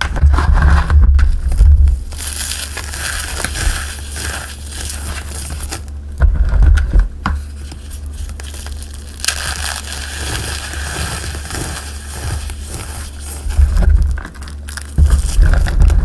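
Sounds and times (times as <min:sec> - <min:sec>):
heavy low bump: 0:00.8 - 0:02.2
chalk crunching by hand: 0:01.9 - 0:06.1, 0:07.4 - 0:16.0.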